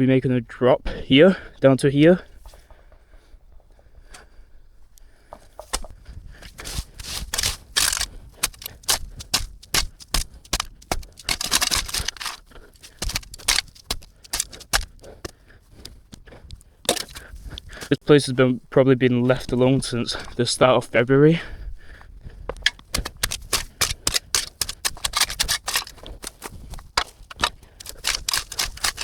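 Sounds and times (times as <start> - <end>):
twigs and brush crackling: 2.1 - 18.1, 21.9 - 29.0.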